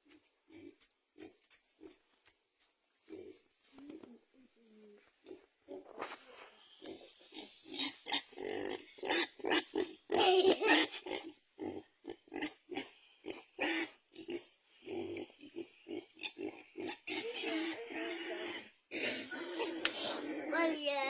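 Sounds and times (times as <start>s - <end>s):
pigs grunting: 6.8s - 20.9s.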